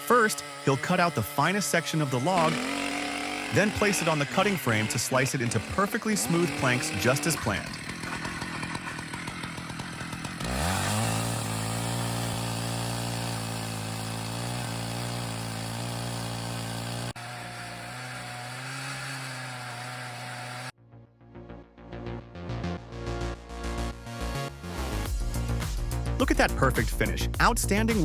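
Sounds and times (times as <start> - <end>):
chainsaw cutting log: 0.0 - 20.8.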